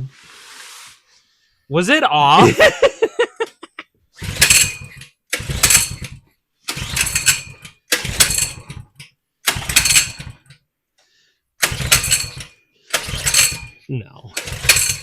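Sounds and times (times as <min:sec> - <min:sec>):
engine recoil starter pulls: 0:04.2 - 0:10.6, 0:11.6 - 0:15.0.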